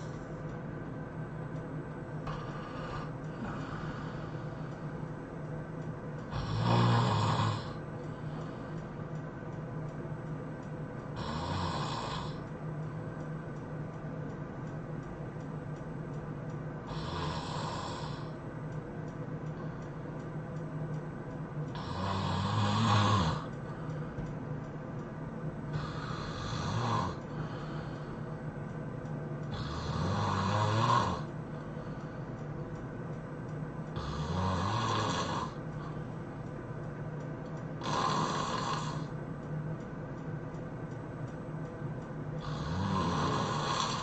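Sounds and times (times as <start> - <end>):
steady low hum: 0.0 - 44.0
person snoring: 2.2 - 4.6, 6.3 - 7.8, 11.2 - 12.4, 16.9 - 18.4, 21.7 - 23.5, 25.7 - 28.1, 29.5 - 31.3, 34.0 - 36.0, 37.8 - 39.1, 42.4 - 44.0.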